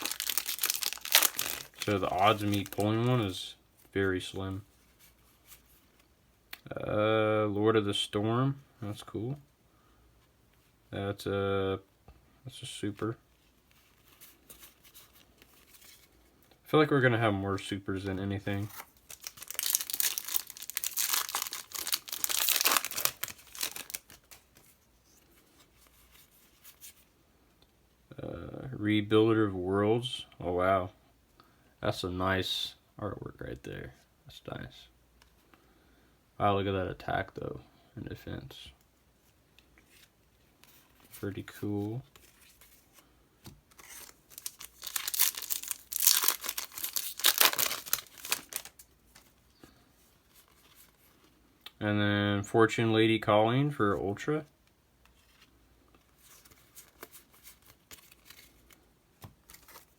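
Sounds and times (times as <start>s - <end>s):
foil wrapper crinkling and tearing: 0.0s - 3.4s, 18.5s - 24.6s, 43.7s - 49.3s.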